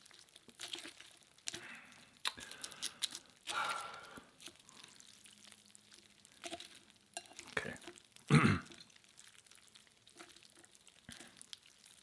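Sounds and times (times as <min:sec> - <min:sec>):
food wrapping crinkling: 0:00.0 - 0:12.0.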